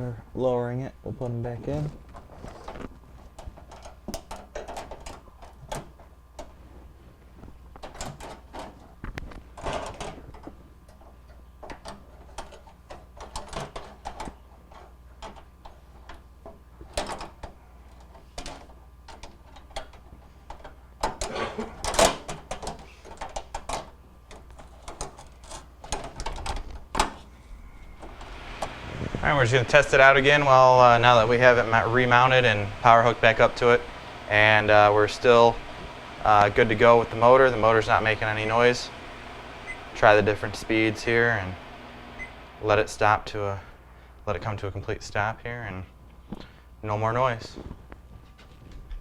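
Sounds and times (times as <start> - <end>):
thin metal clicks and knocks: 3.4 - 6.5.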